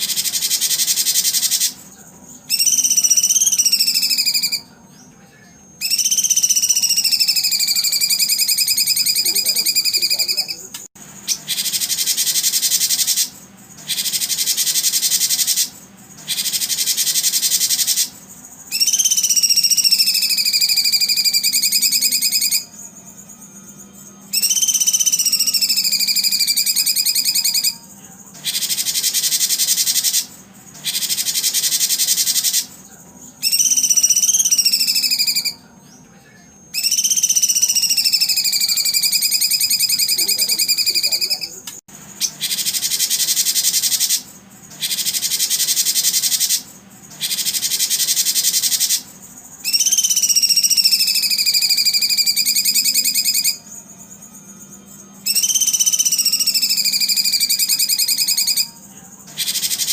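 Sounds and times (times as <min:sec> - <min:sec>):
songbird buzzy trilling: 0:00.0 - 0:59.9.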